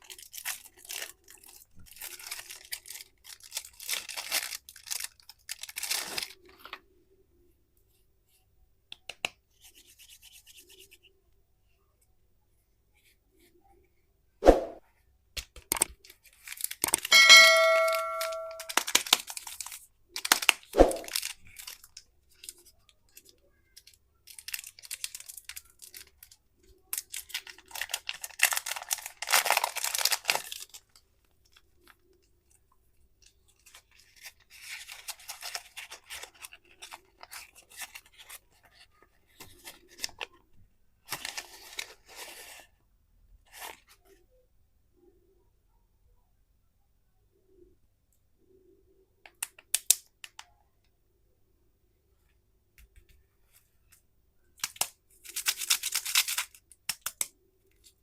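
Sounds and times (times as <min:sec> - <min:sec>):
plastic wrappers crinkling: 0:00.0 - 0:06.8, 0:15.7 - 0:17.8, 0:18.5 - 0:32.3, 0:33.2 - 0:40.4, 0:54.6 - 0:58.0
short ringing ding: 0:17.1 - 0:18.7.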